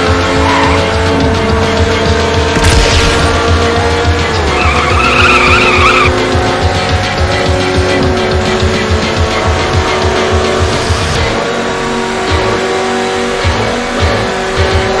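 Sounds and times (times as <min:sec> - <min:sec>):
tire squeal: 0:00.0 - 0:01.7, 0:03.2 - 0:06.9
music with thumping bass beat: 0:00.0 - 0:11.6, 0:12.2 - 0:15.0
car engines running: 0:00.0 - 0:15.0.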